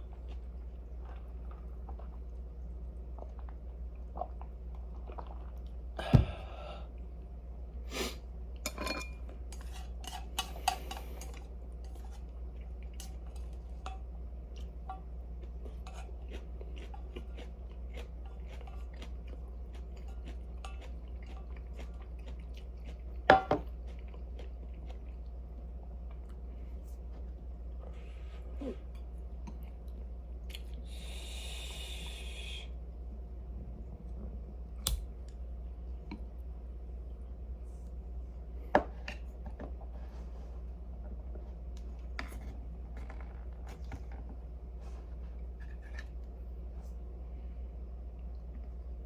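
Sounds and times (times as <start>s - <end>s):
steady low hum: 0.0s - 49.0s
dishes and utensils clinking: 8.7s - 12.0s
chewing: 15.4s - 25.3s.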